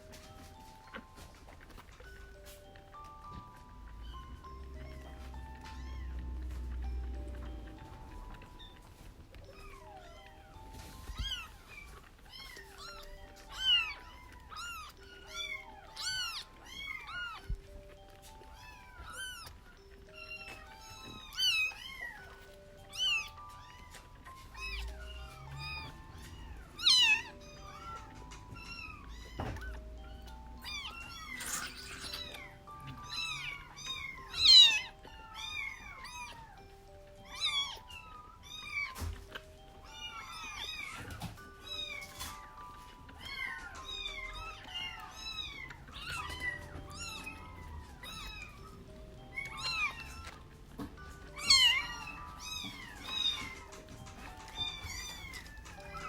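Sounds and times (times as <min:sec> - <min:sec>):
soft background music: 0:00.0 - 0:56.0
kittens mewing: 0:00.8 - 0:56.0.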